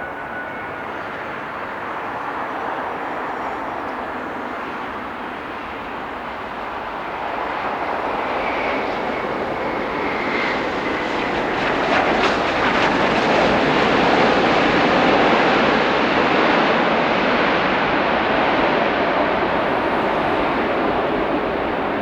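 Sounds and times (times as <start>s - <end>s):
jet airliner engines rushing: 0.0s - 22.0s.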